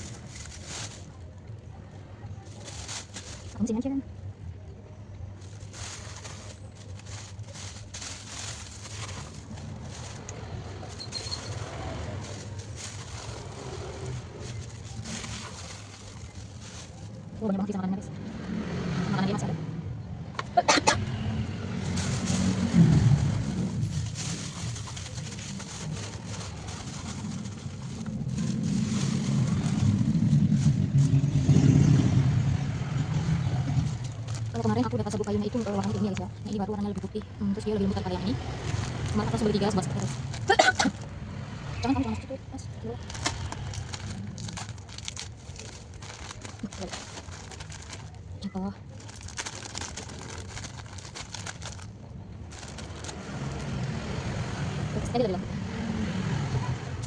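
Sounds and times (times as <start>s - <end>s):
vehicle engine rumble passing: 0.0s - 57.0s
wood-shaving bedding rustling: 5.5s - 17.3s, 21.7s - 31.3s.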